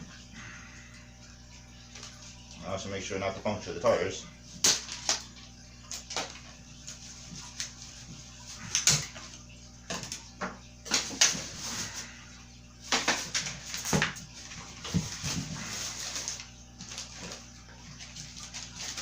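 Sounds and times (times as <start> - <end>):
cardboard ripping and rustling: 12.9 - 19.0.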